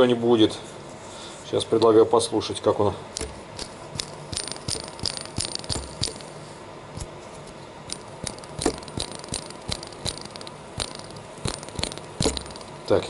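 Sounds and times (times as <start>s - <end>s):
ball bearing rattling clicks: 3.2s - 6.4s, 7.9s - 13.0s.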